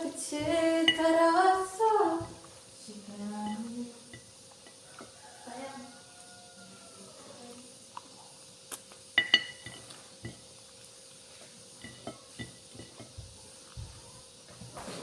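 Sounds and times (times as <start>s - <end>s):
tableware ringing clinks: 9.2s - 9.8s.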